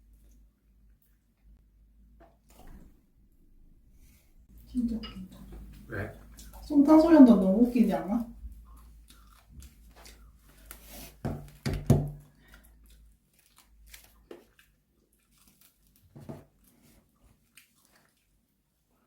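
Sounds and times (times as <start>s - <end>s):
fried chicken tearing and crackling: 12.3s - 16.8s.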